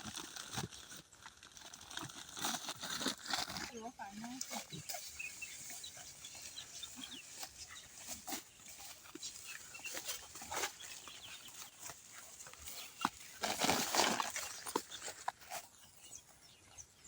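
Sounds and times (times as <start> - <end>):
chickens clucking: 4.5 - 13.2.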